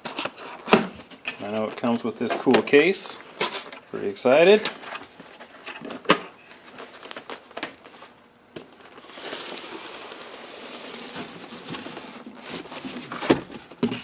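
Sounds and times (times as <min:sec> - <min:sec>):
rustling sliding scrape in box: 0:09.0 - 0:13.4.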